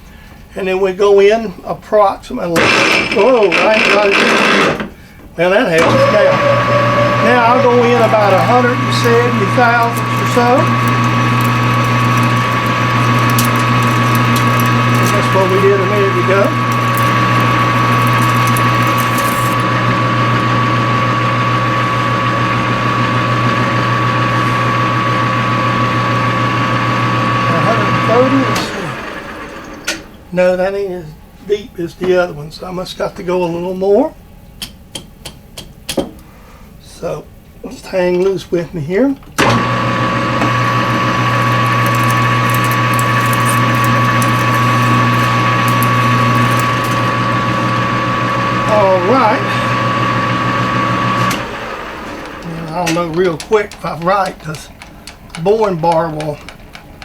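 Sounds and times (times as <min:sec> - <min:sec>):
light crackling: 0:02.6 - 0:27.5, 0:39.5 - 0:57.0
machine spindle humming and whining: 0:05.8 - 0:30.3, 0:39.4 - 0:55.4.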